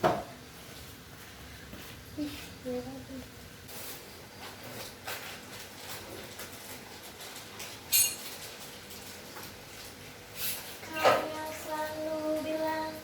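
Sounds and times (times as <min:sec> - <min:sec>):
ringing metallic clink: 0:07.9 - 0:08.2.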